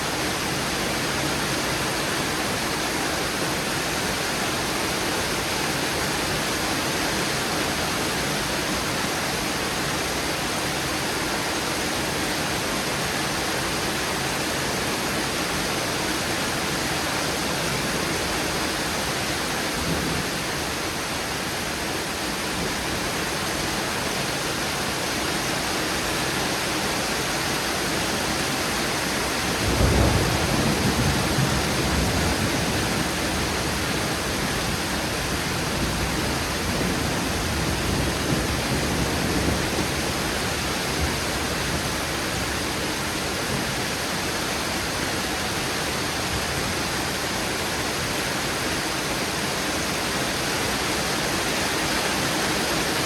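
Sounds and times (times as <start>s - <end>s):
heavy rain: 0.0s - 53.0s
thunder rumbling: 29.5s - 41.9s.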